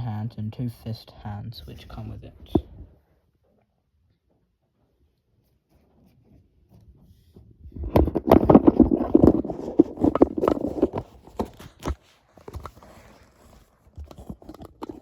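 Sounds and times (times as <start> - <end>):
plastic toy rustling and clicking: 7.8 - 15.0.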